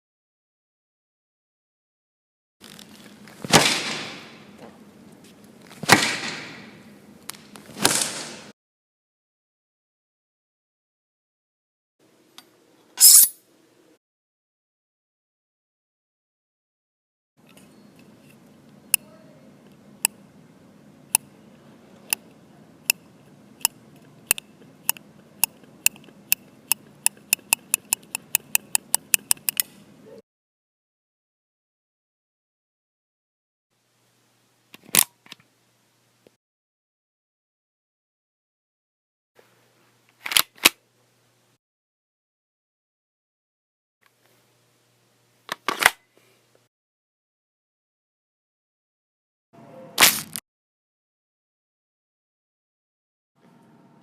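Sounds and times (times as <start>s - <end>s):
gunshots echoing: 3.5s - 4.5s
small click: 25.8s - 29.7s.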